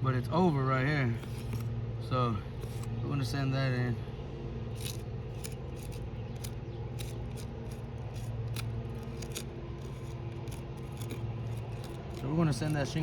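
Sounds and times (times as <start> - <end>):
steady low hum: 0.0 - 13.0
gritty scrapes on roof shingles: 4.8 - 13.0.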